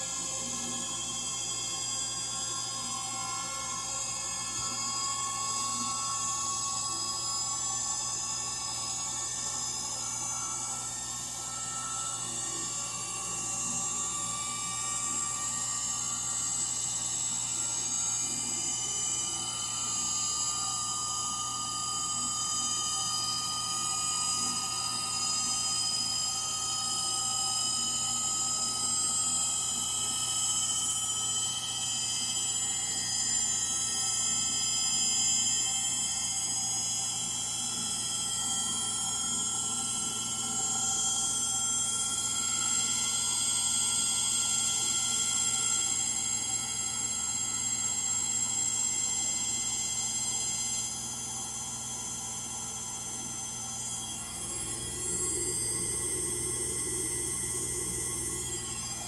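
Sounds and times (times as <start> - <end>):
high-pitched motor whine: 0.0 - 59.0
washing machine spinning: 52.0 - 59.0
low hum: 54.2 - 59.0.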